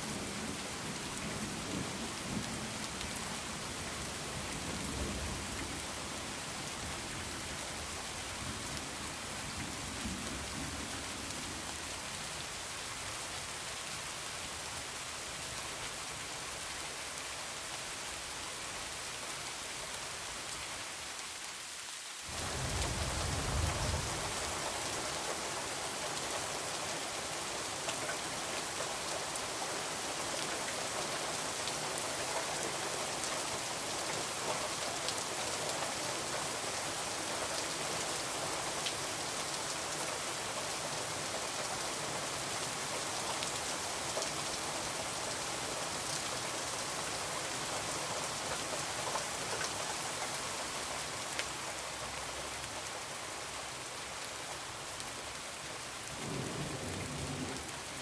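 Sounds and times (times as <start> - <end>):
heavy rain hissing: 22.2 - 49.6.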